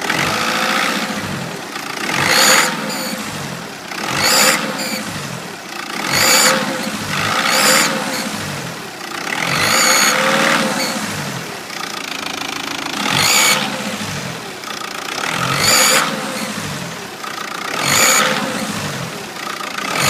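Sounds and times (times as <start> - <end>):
diesel engine revving: 0.0 - 20.0
turbocharger whistle: 2.2 - 3.4, 4.1 - 5.3, 6.0 - 8.4, 9.5 - 11.2, 13.1 - 13.9, 15.3 - 16.6, 17.8 - 18.7.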